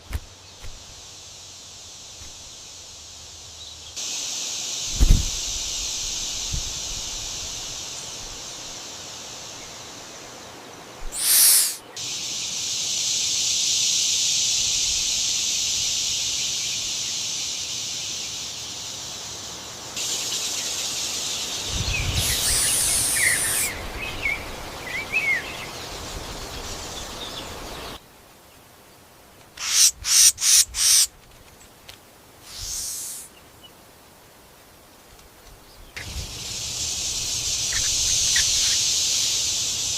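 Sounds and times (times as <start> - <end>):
short harsh bursts: 11.0 - 11.8
short bird chirps: 11.0 - 11.9, 32.5 - 33.3
birds calling: 11.0 - 12.0, 21.4 - 28.0, 29.6 - 31.1, 35.8 - 39.9
high-pitched outdoor buzz: 36.0 - 39.9.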